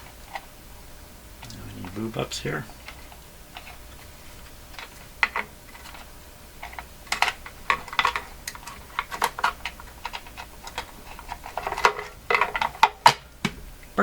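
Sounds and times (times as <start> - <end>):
small parts clicking and tapping: 2.7 - 3.8, 4.7 - 13.2.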